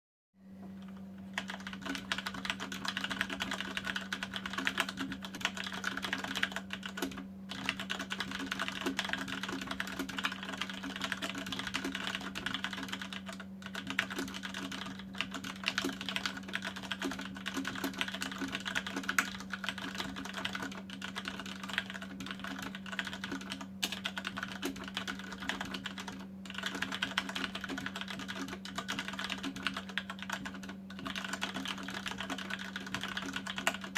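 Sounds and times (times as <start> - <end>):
steady low hum: 0.4 - 33.9
fast mechanical keyboard typing: 0.9 - 33.9.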